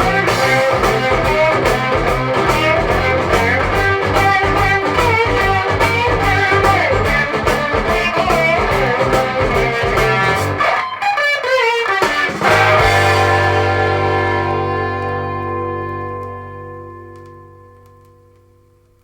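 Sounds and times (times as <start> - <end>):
blues-rock band music: 0.0 - 18.4
distorted electric guitar lick: 0.0 - 19.0.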